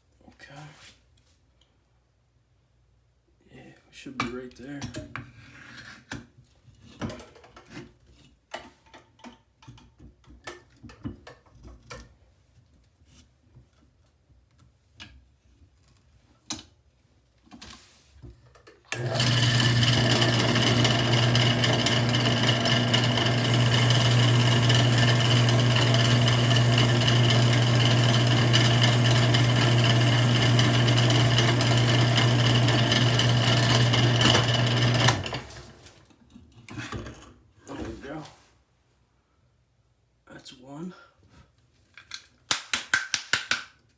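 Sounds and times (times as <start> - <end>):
drill press drilling screw: 18.9 - 35.8.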